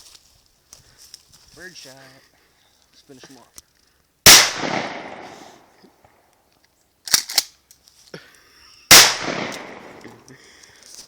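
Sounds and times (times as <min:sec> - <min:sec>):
shotgun blasts with echo: 0:04.3 - 0:05.6, 0:08.9 - 0:10.1.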